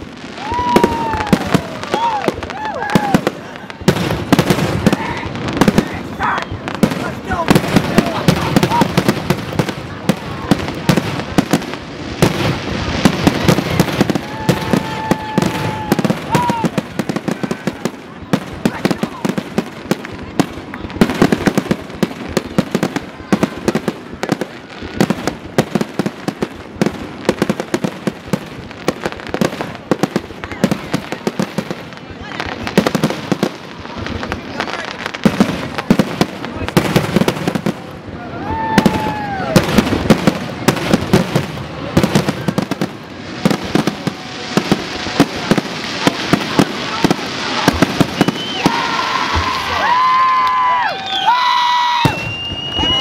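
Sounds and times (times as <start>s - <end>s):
fireworks bangs: 0.0s - 53.0s
high whistling tone: 48.1s - 48.8s, 52.0s - 53.0s.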